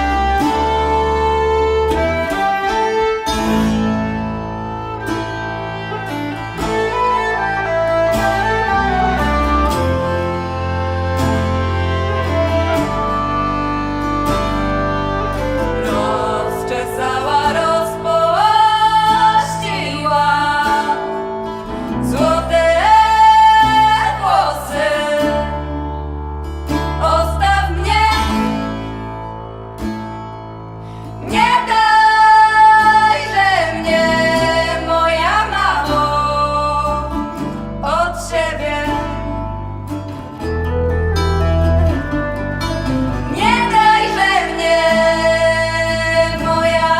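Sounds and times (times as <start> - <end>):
guitar and bass: 0.0 - 46.9
person singing: 15.0 - 25.7, 31.2 - 39.4, 43.3 - 46.9.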